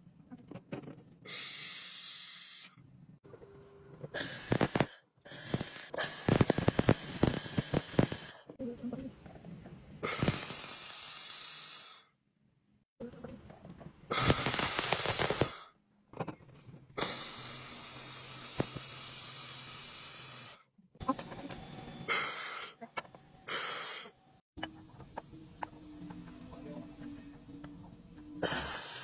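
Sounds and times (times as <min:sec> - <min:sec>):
welding arc hissing and crackling: 0:01.3 - 0:02.7, 0:04.2 - 0:08.5, 0:10.1 - 0:12.0, 0:14.1 - 0:15.7, 0:17.0 - 0:20.6, 0:28.4 - 0:29.0.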